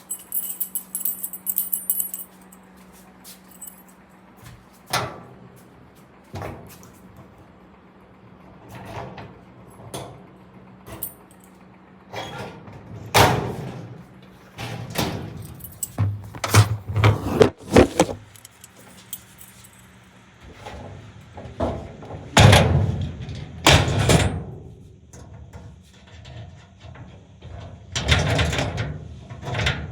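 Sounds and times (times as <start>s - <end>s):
keys jingling: 0.0s - 2.6s, 3.3s - 4.0s, 11.0s - 11.5s, 15.3s - 16.7s, 17.8s - 20.0s.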